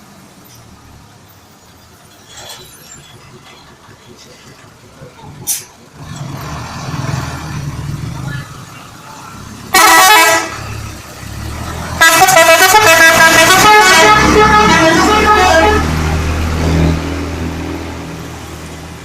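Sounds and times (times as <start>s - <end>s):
bus engine running: 0.0s - 19.0s
multi-tone musical bus horn: 9.7s - 10.8s, 11.9s - 16.1s.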